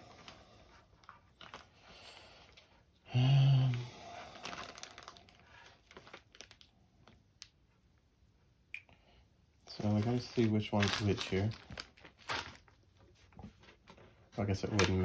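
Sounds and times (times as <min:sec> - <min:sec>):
rustling and clicking of small parts: 0:00.2 - 0:02.7, 0:04.4 - 0:07.5, 0:09.7 - 0:15.0
person humming: 0:03.1 - 0:03.9.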